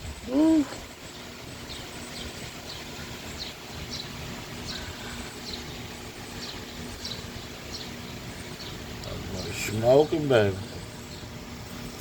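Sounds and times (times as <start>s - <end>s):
bird chirping: 0.0s - 12.0s
outdoor hiss: 0.0s - 12.0s.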